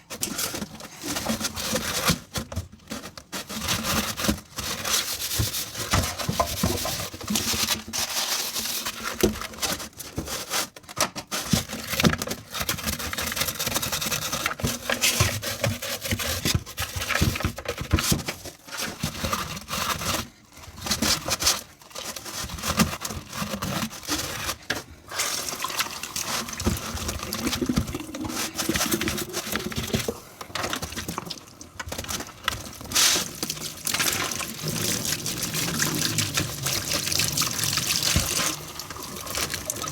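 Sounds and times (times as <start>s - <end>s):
scrubbing dishes: 23.0s - 39.9s
water splashing: 32.9s - 39.9s.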